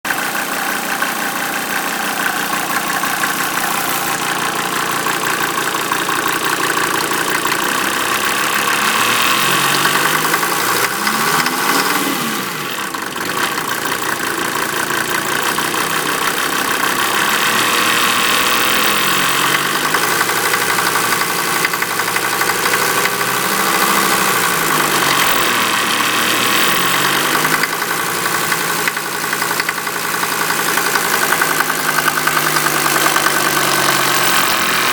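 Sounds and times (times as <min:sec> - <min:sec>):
diesel engine running: 0:00.1 - 0:34.9.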